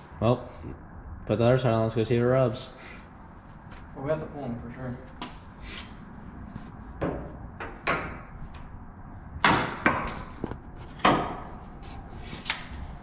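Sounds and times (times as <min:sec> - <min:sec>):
knocks and bangs on metal: 0:11.0 - 0:11.5.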